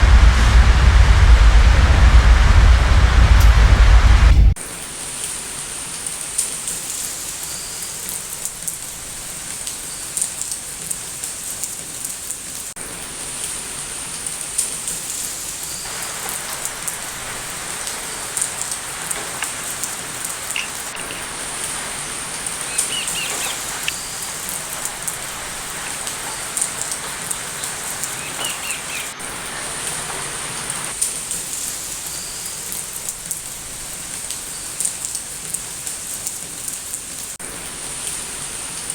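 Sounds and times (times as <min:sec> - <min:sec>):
rain pattering on hard surface: 0:00.0 - 0:38.9
faint bird chirps: 0:18.0 - 0:30.0.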